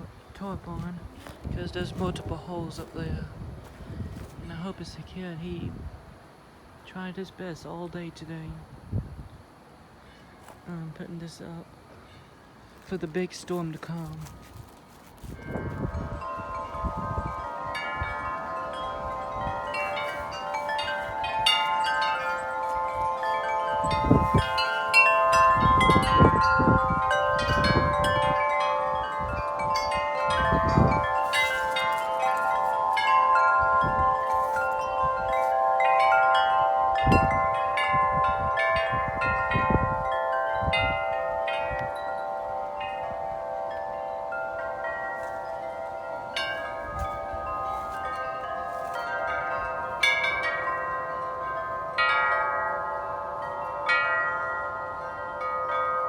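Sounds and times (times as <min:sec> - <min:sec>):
wind rumbling on microphone: 0:00.0 - 0:06.4, 0:08.3 - 0:09.6, 0:13.8 - 0:52.1
tubular wind chime ringing: 0:15.1 - 0:56.0.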